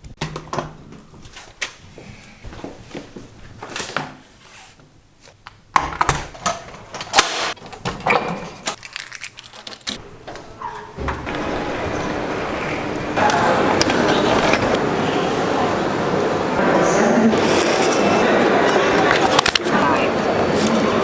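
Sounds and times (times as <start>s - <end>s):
small hard objects clinking: 8.7s - 10.0s.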